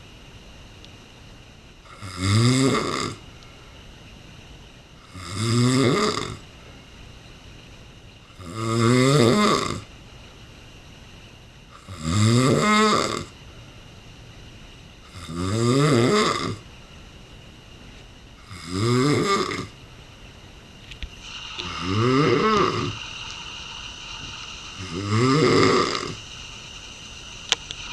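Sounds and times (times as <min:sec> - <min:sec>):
man snoring loudly: 0:01.9 - 0:03.2, 0:05.0 - 0:06.4, 0:08.4 - 0:09.8, 0:11.8 - 0:13.3, 0:15.1 - 0:16.6, 0:18.4 - 0:19.7, 0:21.6 - 0:23.0, 0:24.8 - 0:26.2.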